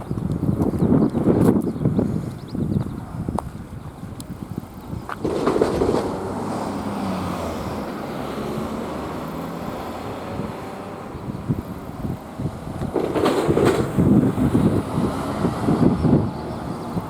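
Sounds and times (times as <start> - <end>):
vehicle passing close by: 4.9 - 17.0.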